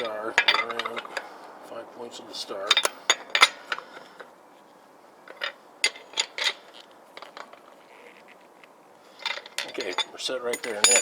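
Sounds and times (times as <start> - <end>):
lug wrench clinking on nuts: 0.0 - 1.3, 2.6 - 4.1, 5.3 - 7.6, 9.2 - 11.0.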